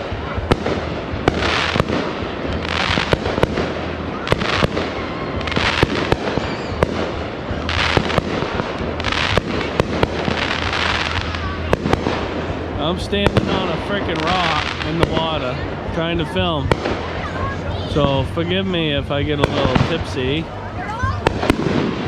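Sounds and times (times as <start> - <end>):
fireworks and firecrackers popping: 0.0 - 22.0.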